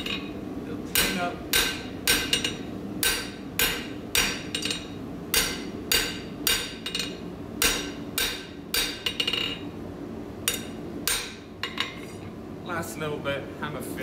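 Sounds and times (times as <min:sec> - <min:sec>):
hammer striking hot steel on anvil: 0:00.9 - 0:09.6, 0:10.5 - 0:12.0.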